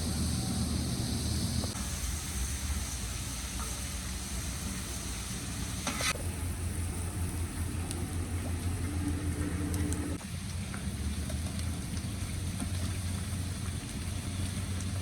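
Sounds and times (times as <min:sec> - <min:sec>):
food sizzling in a pot: 0:01.7 - 0:06.2
low rumble: 0:06.2 - 0:10.2.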